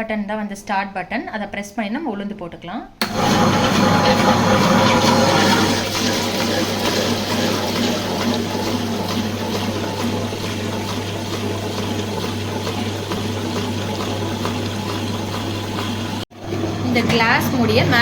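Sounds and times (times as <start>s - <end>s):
wet grinder motor hum: 3.0s - 18.0s
grinding stone wet swishing: 3.1s - 16.2s.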